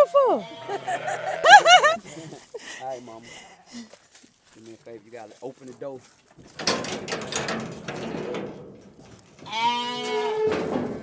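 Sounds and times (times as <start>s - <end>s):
clattering and rustling of animals: 0.0s - 11.0s
lamb bleating: 0.4s - 1.8s, 9.5s - 10.5s.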